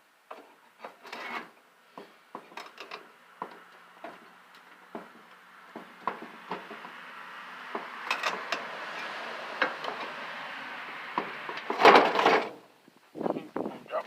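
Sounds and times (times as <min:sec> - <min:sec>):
loud metal clatter: 0:11.2 - 0:12.6.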